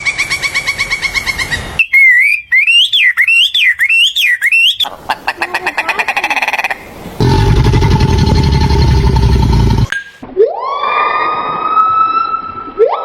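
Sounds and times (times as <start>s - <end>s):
bird whistle sliding up and down: 1.8s - 4.9s.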